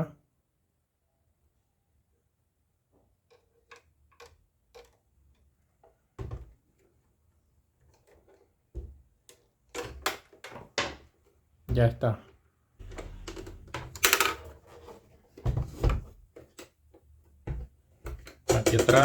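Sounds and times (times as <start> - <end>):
louder knocks: 12.8 - 14.5.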